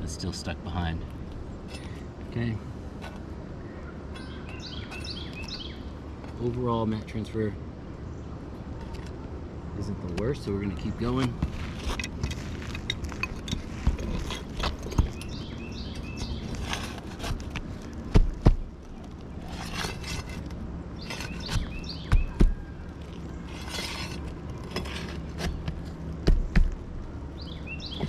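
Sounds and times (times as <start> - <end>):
birds chirping: 0.0 - 28.0
shingles knocking and scraping: 10.8 - 27.1.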